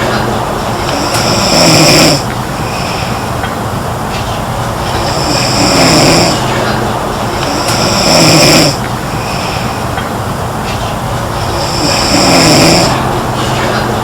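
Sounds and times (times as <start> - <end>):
steady background noise: 0.0 - 14.0
girl snoring loudly: 0.9 - 3.2, 5.0 - 9.6, 11.3 - 13.2.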